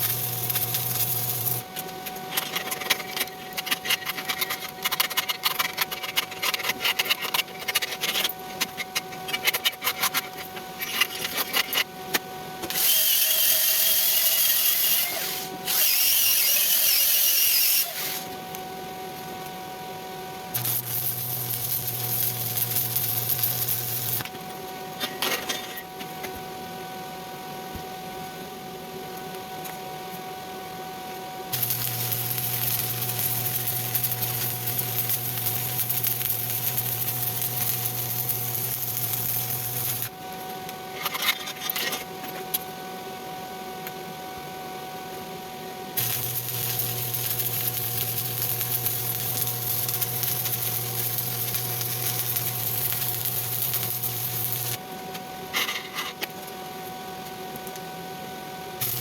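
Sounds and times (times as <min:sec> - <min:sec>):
arc welding crackling: 0:00.0 - 0:11.8, 0:12.7 - 0:18.4, 0:20.5 - 0:24.4, 0:31.5 - 0:40.2, 0:46.0 - 0:55.1, 0:58.8 - 0:59.0.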